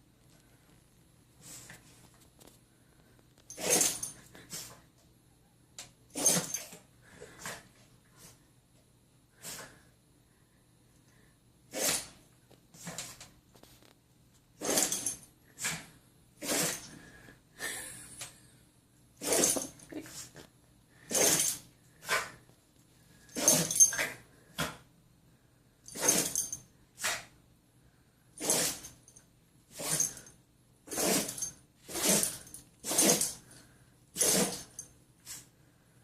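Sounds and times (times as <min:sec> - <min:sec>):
dog sneezing: 0:03.5 - 0:04.8, 0:06.1 - 0:06.7, 0:11.7 - 0:12.2, 0:14.6 - 0:16.9, 0:19.2 - 0:20.3, 0:21.1 - 0:22.3, 0:23.4 - 0:24.8, 0:25.9 - 0:26.4, 0:27.0 - 0:27.3, 0:28.4 - 0:29.0, 0:29.7 - 0:30.2, 0:30.9 - 0:33.4, 0:34.2 - 0:35.5.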